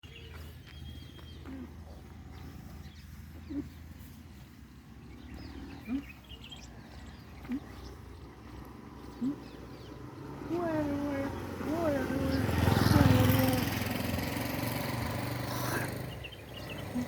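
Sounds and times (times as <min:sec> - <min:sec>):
low animal calls: 0:09.0 - 0:14.0.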